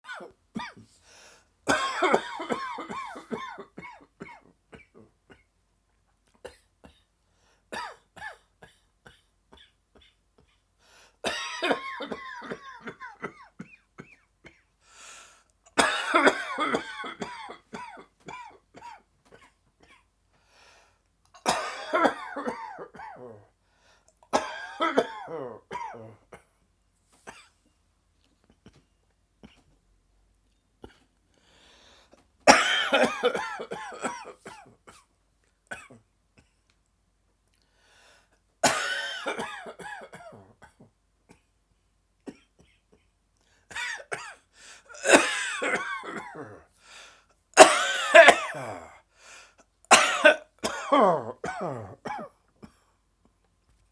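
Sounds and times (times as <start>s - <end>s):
person coughing: 0.0s - 1.0s, 1.7s - 5.5s, 11.2s - 14.6s, 15.7s - 20.0s, 21.4s - 23.4s, 24.3s - 26.5s, 32.5s - 35.0s, 38.6s - 41.5s, 43.7s - 46.7s, 47.6s - 49.0s, 49.9s - 52.8s.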